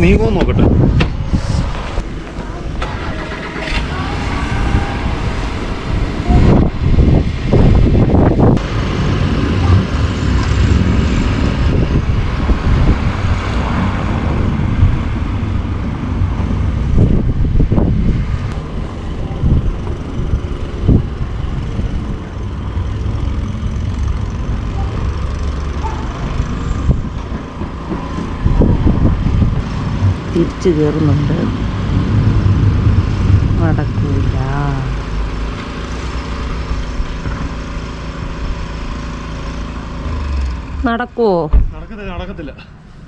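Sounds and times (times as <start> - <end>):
car engine running: 0.0 - 43.0.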